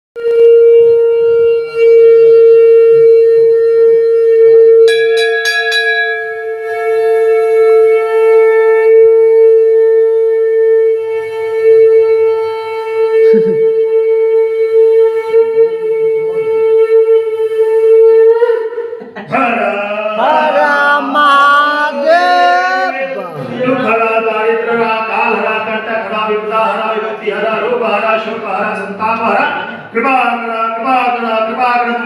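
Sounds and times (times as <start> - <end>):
conch shell blown: 0.2 - 19.0.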